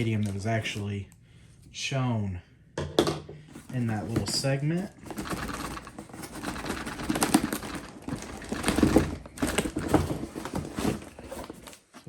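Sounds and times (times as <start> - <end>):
cardboard and plastic packaging rustling: 0.0 - 1.0, 3.4 - 12.0.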